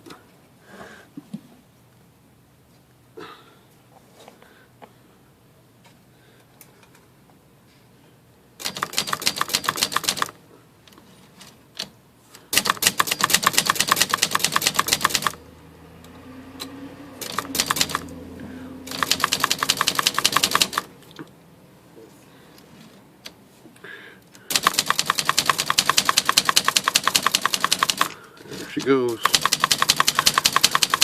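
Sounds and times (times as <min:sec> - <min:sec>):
manual typewriter typing fast: 0:08.6 - 0:10.4, 0:12.5 - 0:15.4, 0:17.2 - 0:18.2, 0:18.9 - 0:20.9, 0:24.5 - 0:28.2, 0:28.8 - 0:31.0.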